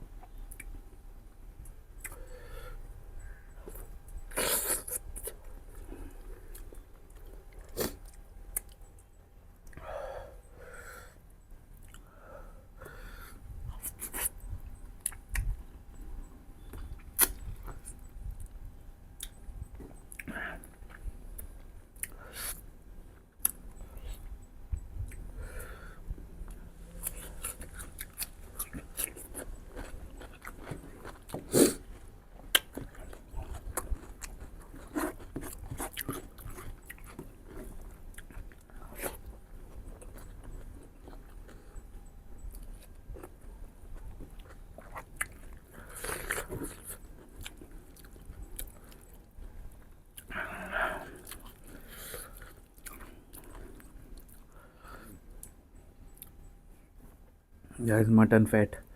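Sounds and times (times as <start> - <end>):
chewing and biting: 16.6 - 18.6, 26.5 - 54.6.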